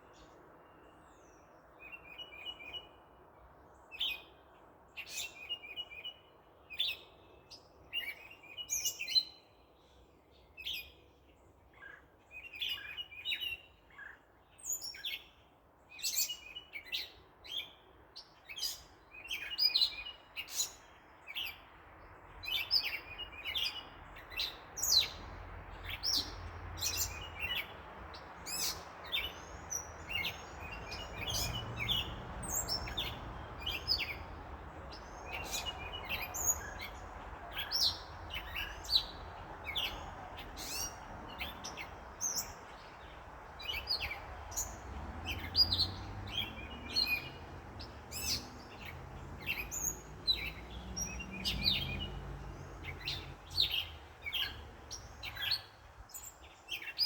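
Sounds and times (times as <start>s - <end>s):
small birds chirping: 10.3s - 57.0s
distant traffic rumble: 21.3s - 57.0s.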